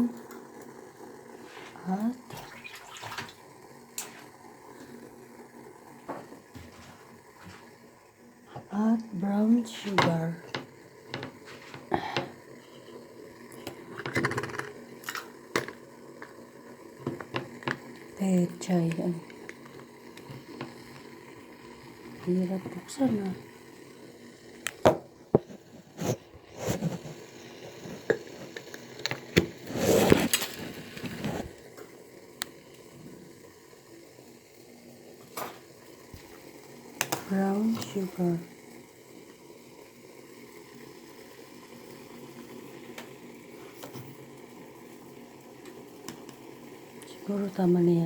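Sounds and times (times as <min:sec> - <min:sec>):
kitchen items clicking and clinking: 0:13.9 - 0:16.3.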